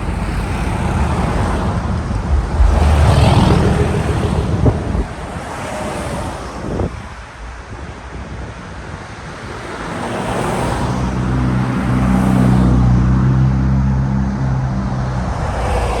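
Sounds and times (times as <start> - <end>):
low engine hum: 0.0 - 6.6, 12.6 - 16.0
road and wind noise: 0.0 - 16.0
motor vehicle running: 1.2 - 6.4.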